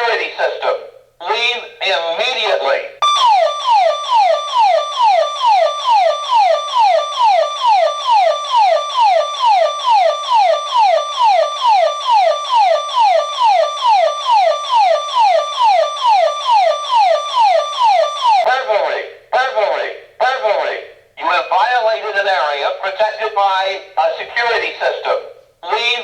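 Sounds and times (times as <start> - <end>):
burglar alarm siren: 3.0 - 18.5.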